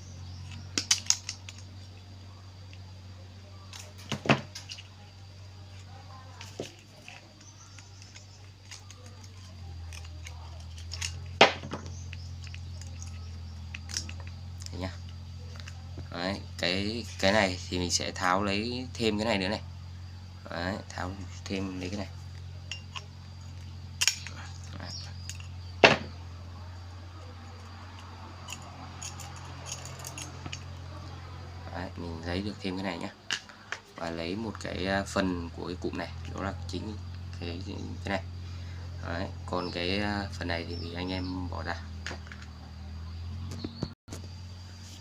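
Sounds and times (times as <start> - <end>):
low steady hum: 0.0 - 45.0
metal and plastic parts clicking: 0.4 - 1.9, 6.4 - 14.8, 24.0 - 26.1, 27.6 - 30.7.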